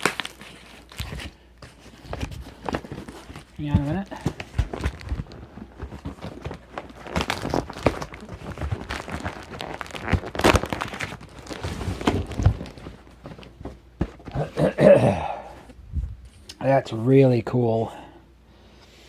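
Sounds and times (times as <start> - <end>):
cardboard rustling and crinkling: 0.0 - 14.8.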